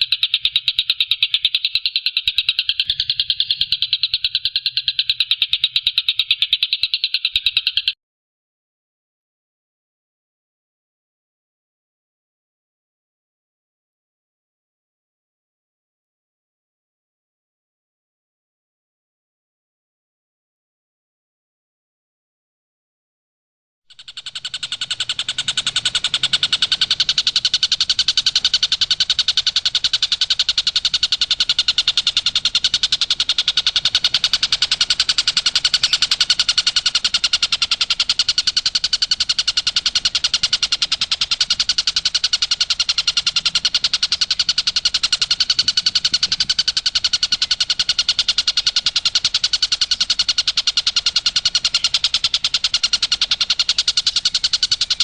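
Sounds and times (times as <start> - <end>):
kingfisher rattling call: 0.0 - 8.0, 23.9 - 55.0.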